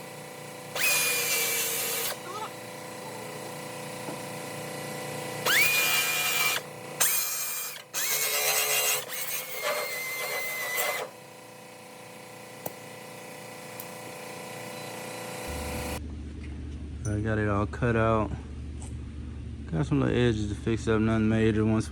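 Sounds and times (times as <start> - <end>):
power tool cutting sheet metal: 0.0 - 16.0.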